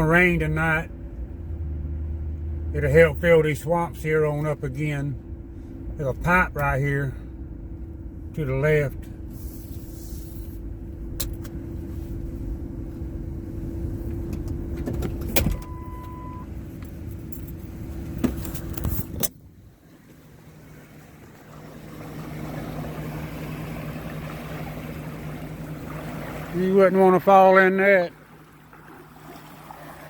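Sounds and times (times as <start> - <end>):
rushing noise with low hum: 0.0 - 27.4
car engine running: 0.0 - 30.0
short steady beep: 15.6 - 16.5.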